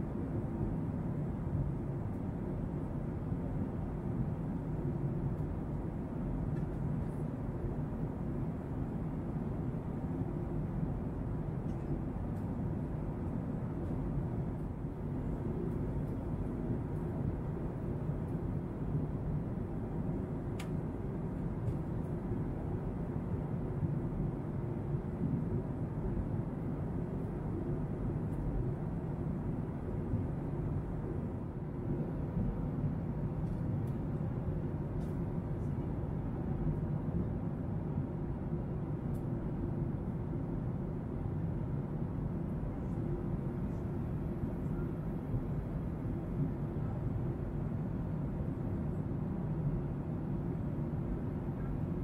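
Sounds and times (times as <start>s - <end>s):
airliner cabin rumble: 0.0s - 52.0s.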